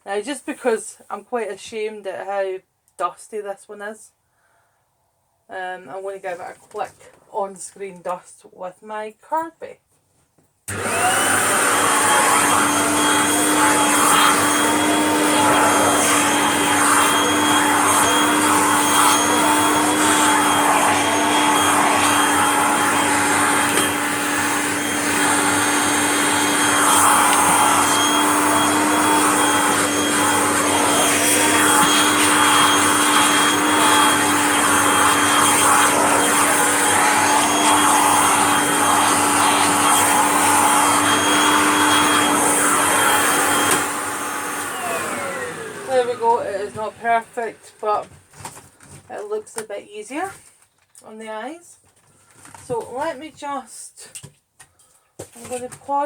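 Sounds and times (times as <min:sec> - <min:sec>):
vacuum cleaner running: 0:10.7 - 0:48.2.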